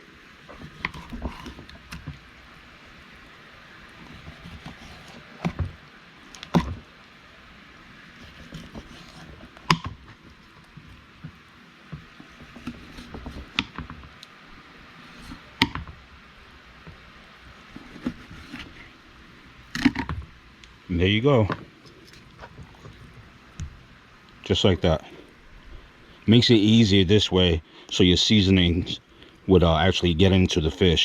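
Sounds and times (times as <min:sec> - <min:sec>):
knife cutting fish: 0:00.5 - 0:02.1, 0:04.0 - 0:06.8, 0:08.1 - 0:10.0, 0:12.2 - 0:13.8, 0:17.7 - 0:18.8.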